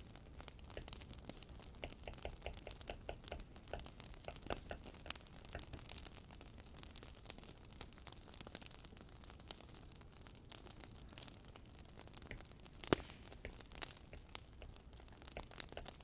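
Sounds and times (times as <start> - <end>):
light irregular clicks: 0.7 - 6.0.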